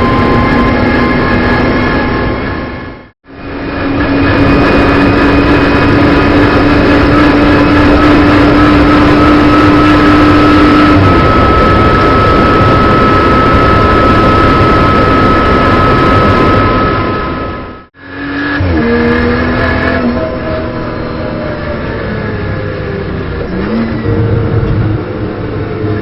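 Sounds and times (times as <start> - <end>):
car engine at high revs: 0.0 - 26.0.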